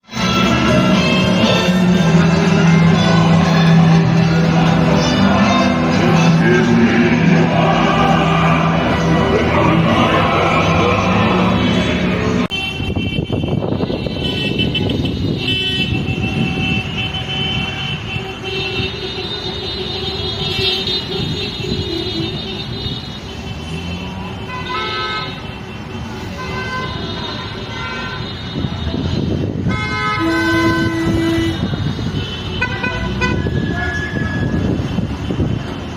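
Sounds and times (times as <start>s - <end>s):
traffic rumble: 0.0s - 35.9s
vehicle horns honking: 0.1s - 4.3s, 12.5s - 35.6s.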